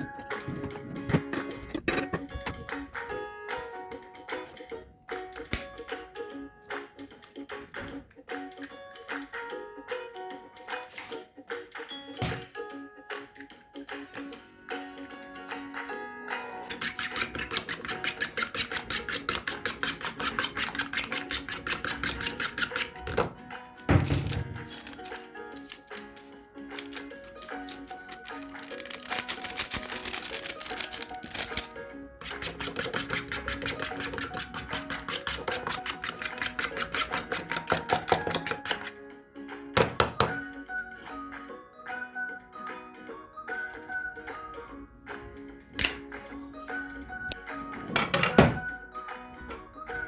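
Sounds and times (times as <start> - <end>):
knife chopping on cutting board: 32.2 - 38.9, 39.8 - 40.4.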